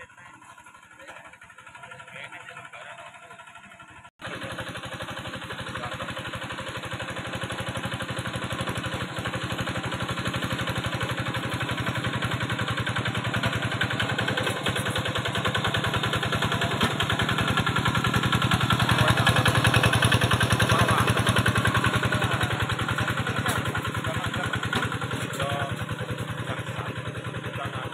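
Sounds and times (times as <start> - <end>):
farm machine engine running: 0.0 - 27.9.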